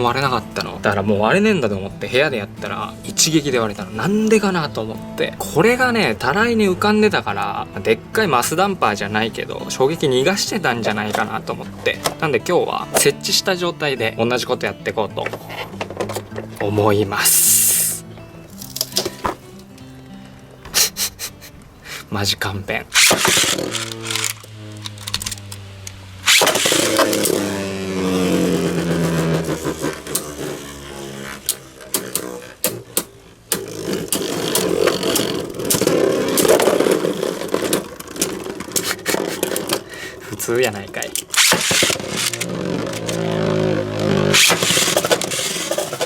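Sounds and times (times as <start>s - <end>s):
spinning tops whirring: 22.9s - 33.0s, 33.6s - 46.0s
loud clatter of tops: 23.0s - 25.6s, 26.2s - 27.5s, 41.1s - 46.0s.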